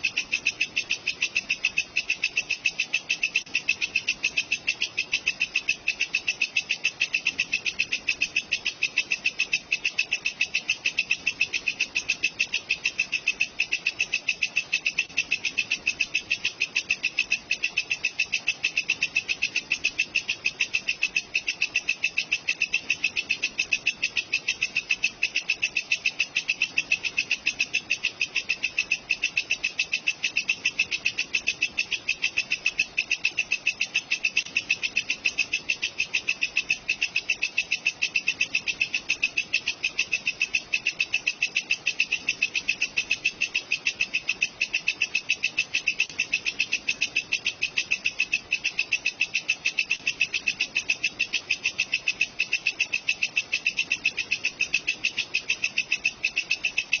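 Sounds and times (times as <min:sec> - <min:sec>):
katydid chirping: 0:00.0 - 0:57.0.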